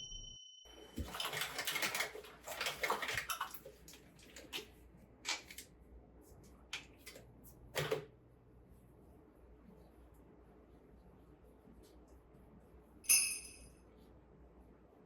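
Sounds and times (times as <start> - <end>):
water splashing at a sink: 0.8 - 5.6.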